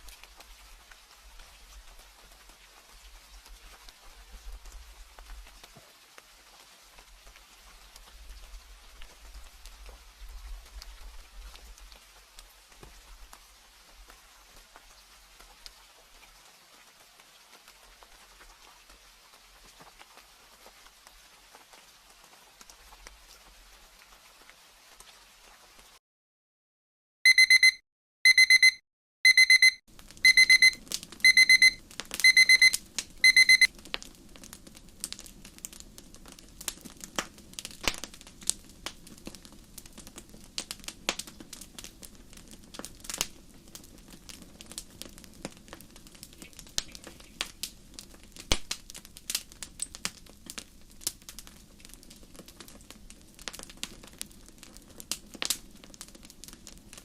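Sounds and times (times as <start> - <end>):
digital timer alarm beeping: 27.3 - 33.7.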